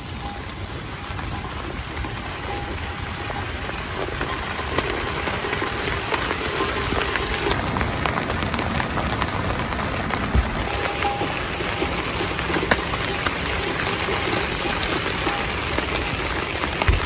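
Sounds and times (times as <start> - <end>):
heavy rain: 0.0 - 17.0
raindrops tapping on a surface: 0.0 - 17.0.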